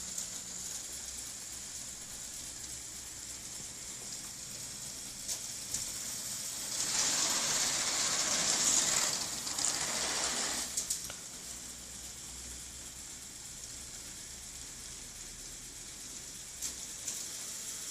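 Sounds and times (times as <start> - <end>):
toy car rattling along track: 6.6 - 11.1.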